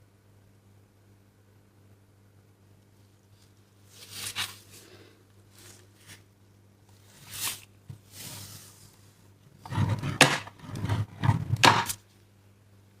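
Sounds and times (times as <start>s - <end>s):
handling rustling and knocking: 9.6s - 12.0s.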